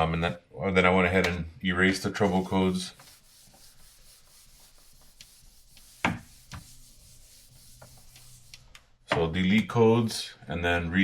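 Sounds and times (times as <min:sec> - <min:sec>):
rubbing and handling noise: 0:01.8 - 0:09.0.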